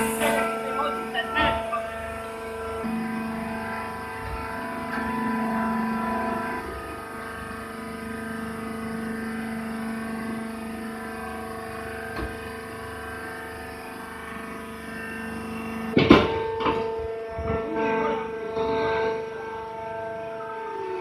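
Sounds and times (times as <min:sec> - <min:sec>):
baler machine hum: 0:00.0 - 0:21.0
loud metal clank: 0:16.0 - 0:17.6.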